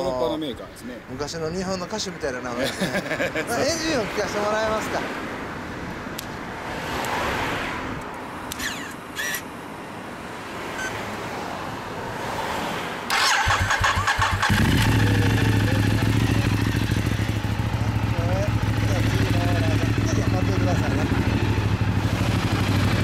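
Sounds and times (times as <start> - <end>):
motorcycle starter cranking: 8.5 - 9.5, 13.1 - 15.2
motorcycle engine idling: 13.2 - 23.0.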